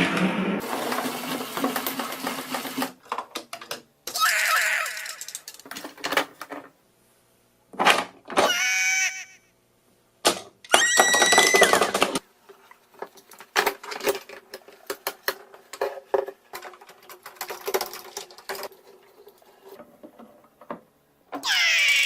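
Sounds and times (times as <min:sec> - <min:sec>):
faint steady hum: 0:03.0 - 0:21.8
toy pieces clicking and rattling: 0:04.2 - 0:06.2, 0:13.7 - 0:18.8.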